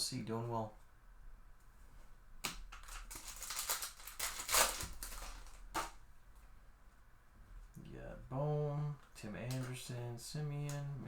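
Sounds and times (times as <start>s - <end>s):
trading cards and foil wrapper rustling: 2.8s - 5.9s.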